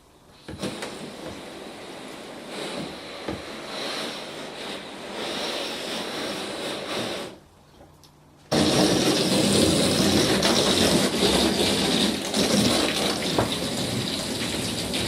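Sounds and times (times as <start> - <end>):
water spraying: 8.5 - 15.0.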